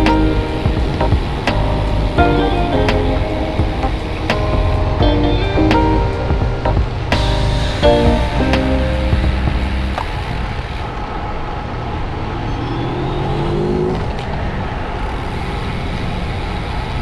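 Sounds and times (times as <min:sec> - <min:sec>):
vehicle engine rising in pitch: 0:00.0 - 0:10.6
passing traffic rush: 0:00.0 - 0:17.0.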